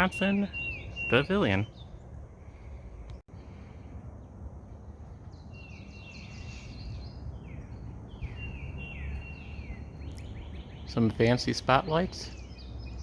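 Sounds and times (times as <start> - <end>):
songbird singing: 0.0 - 13.0.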